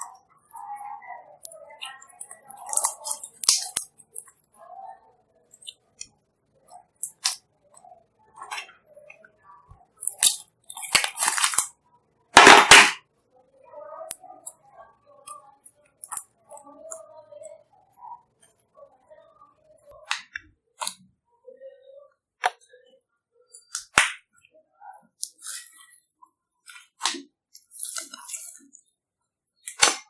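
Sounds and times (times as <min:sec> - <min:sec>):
slime squishing: 0:00.0 - 0:04.6, 0:05.4 - 0:11.7, 0:25.0 - 0:26.0, 0:26.7 - 0:28.8, 0:29.6 - 0:30.0.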